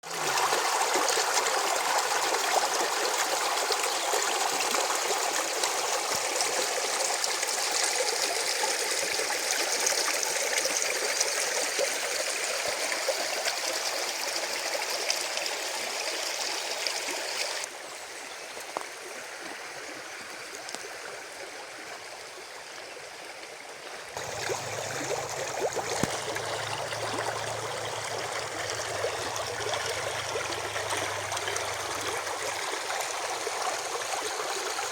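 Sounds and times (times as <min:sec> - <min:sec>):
stream water rushing trickle: 0:00.0 - 0:34.9.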